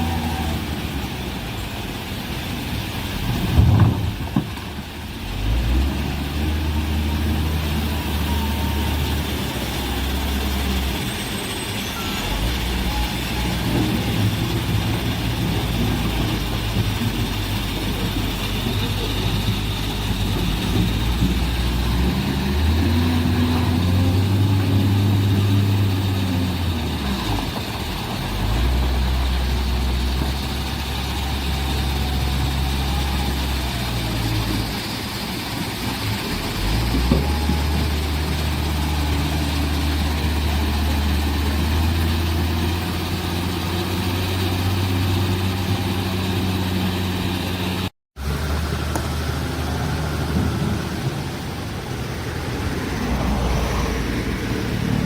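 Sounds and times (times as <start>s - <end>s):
diesel engine working under load: 0.0s - 55.0s
engine knock: 13.7s - 22.4s.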